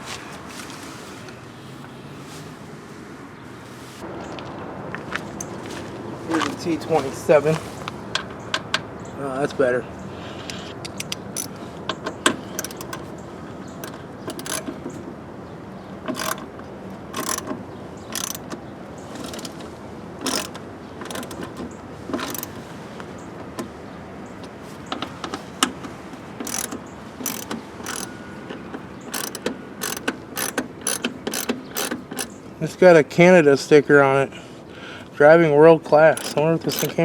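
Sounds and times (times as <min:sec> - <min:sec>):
hand ratchet clicking: 0:10.4 - 0:11.6, 0:12.3 - 0:13.0, 0:13.8 - 0:14.7, 0:16.1 - 0:16.4, 0:17.1 - 0:17.5, 0:18.1 - 0:18.6, 0:19.2 - 0:19.6, 0:20.2 - 0:21.6, 0:22.2 - 0:22.5, 0:26.4 - 0:28.1, 0:29.1 - 0:32.4, 0:36.1 - 0:37.0.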